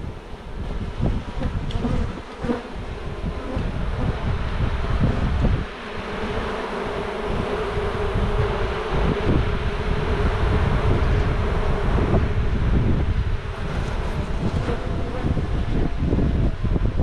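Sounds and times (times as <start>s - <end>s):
bees buzzing: 0.0s - 16.9s
low microphone rumble: 0.0s - 17.0s.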